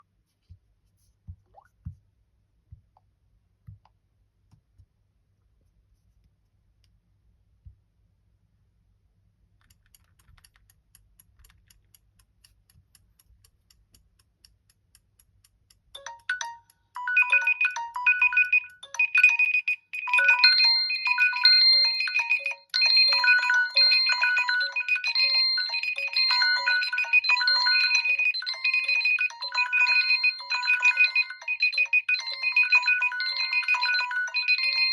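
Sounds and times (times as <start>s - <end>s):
smartphone alarm melody: 16.0s - 34.9s.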